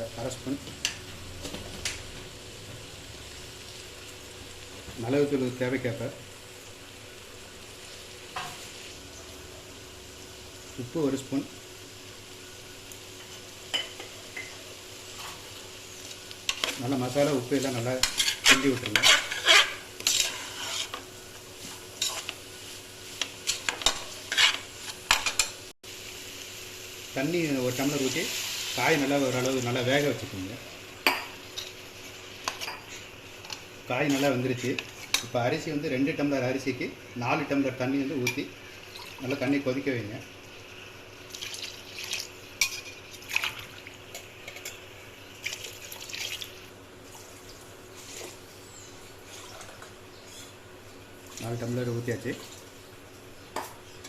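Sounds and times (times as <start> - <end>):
light sizzle of frying: 0.0 - 54.0
spoon scraping in pan: 18.0 - 25.6, 31.1 - 35.3
water pouring into a pot: 41.3 - 42.3, 45.4 - 46.5.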